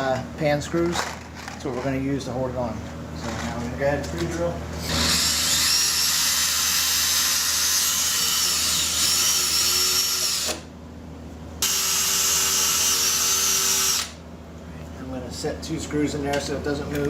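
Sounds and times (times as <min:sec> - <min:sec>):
power drill drilling plexiglass: 0:04.8 - 0:10.7, 0:11.6 - 0:14.2.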